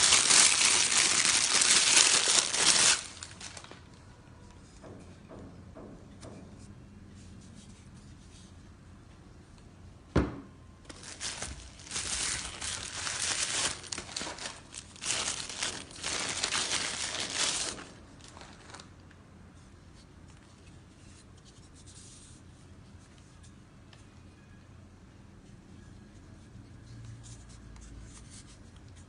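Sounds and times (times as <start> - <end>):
packaging crinkling and tearing: 0.0 - 3.9, 10.9 - 19.0
faint handling sounds: 6.2 - 9.8, 10.9 - 24.7.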